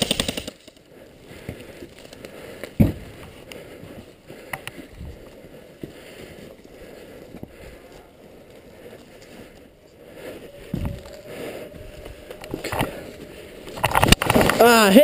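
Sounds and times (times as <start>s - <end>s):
rustling and small knocks: 11.9s - 14.6s.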